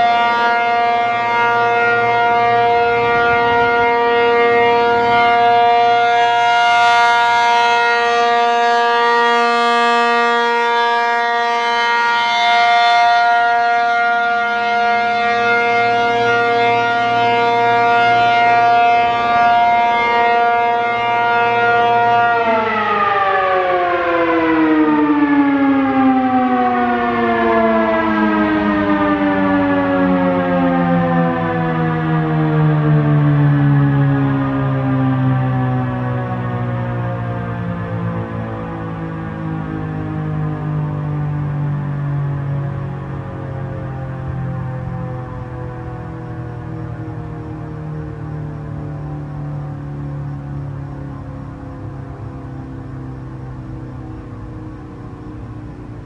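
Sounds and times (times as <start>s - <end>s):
warning siren tone winding down: 0.0s - 56.0s.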